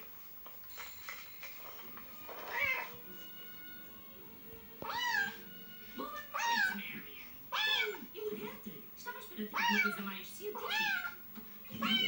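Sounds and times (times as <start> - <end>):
cat meows through phone speaker: 2.4 - 3.0, 4.8 - 5.4.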